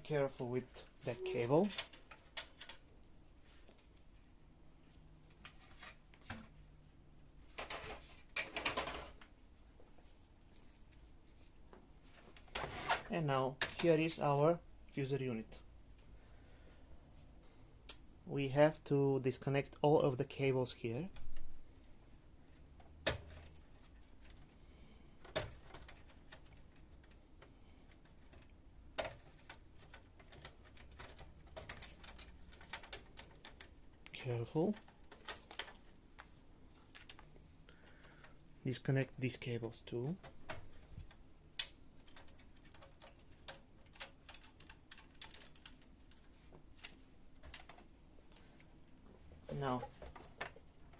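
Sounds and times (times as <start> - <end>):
plastic parts scraping and rustling: 5.3 - 6.5, 7.4 - 14.2.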